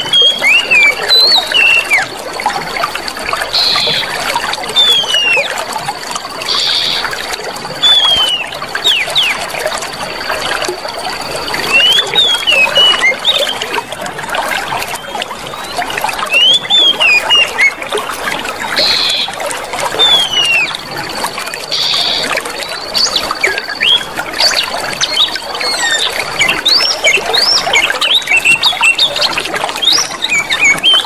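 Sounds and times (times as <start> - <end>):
water flowing and trickling: 0.0 - 31.0
small birds chirping: 3.5 - 4.1, 7.8 - 9.5.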